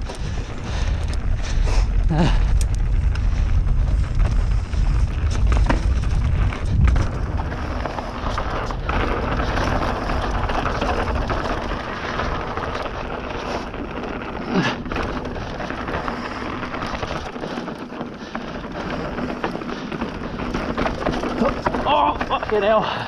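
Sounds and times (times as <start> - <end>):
wind on microphone: 0.0 - 14.0
bike clattering and knocking: 0.0 - 23.0.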